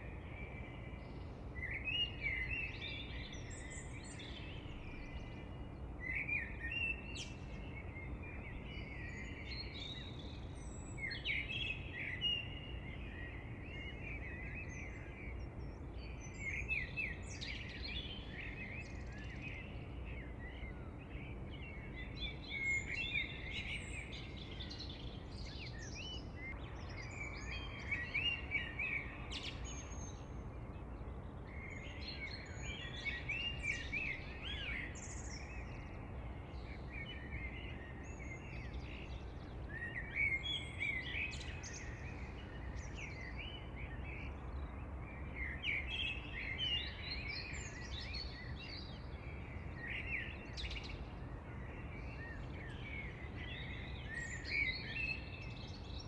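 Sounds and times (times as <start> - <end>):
birds chirping and singing: 31.4 - 56.0.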